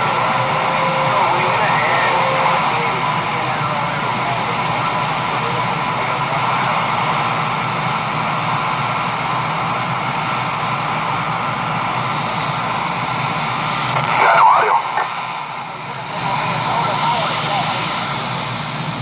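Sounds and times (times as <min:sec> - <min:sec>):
radio static hiss: 0:00.0 - 0:19.0.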